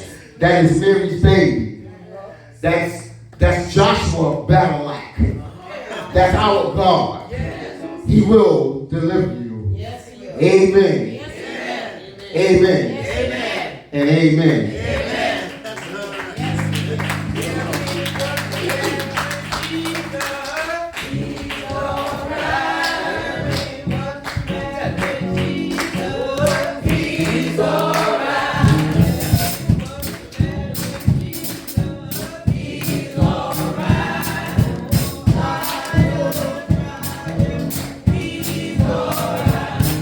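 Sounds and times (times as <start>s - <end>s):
gospel choir singing: 0.0s - 40.0s
band accompaniment: 16.2s - 40.0s
steady percussive beat: 16.4s - 20.4s, 21.1s - 40.0s.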